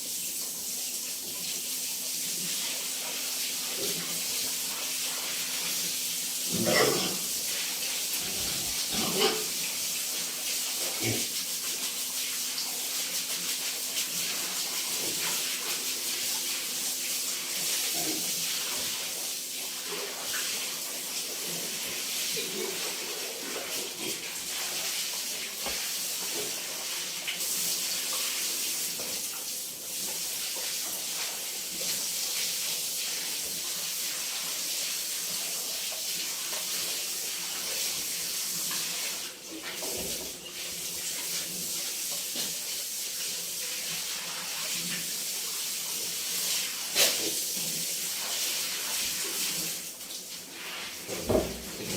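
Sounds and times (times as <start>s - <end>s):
water spraying hiss: 0.0s - 51.9s.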